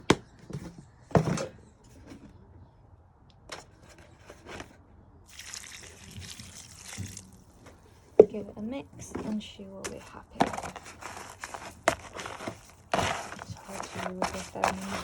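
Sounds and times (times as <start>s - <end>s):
water pouring into feed: 5.3s - 7.6s.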